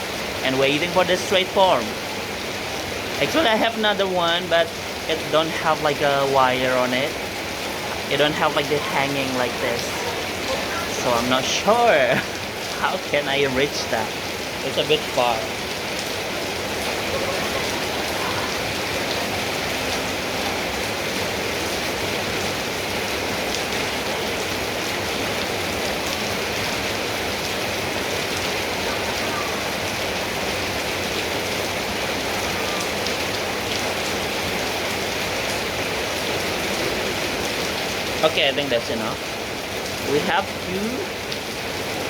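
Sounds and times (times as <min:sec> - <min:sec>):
steady rain falling: 0:00.0 - 0:42.0.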